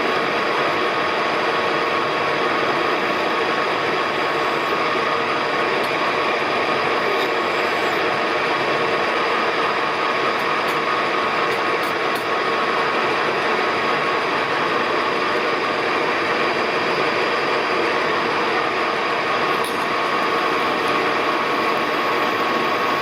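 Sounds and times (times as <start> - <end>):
metal lathe running: 0.0 - 23.0.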